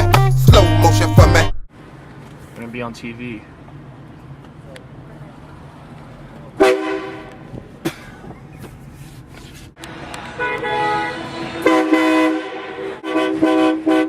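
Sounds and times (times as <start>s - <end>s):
train horn blasts: 6.6s - 7.4s, 10.4s - 14.0s.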